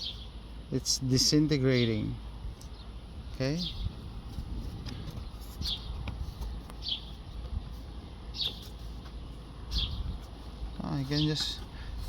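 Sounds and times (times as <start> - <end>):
bird chirping: 0.0 - 4.1, 4.8 - 12.0.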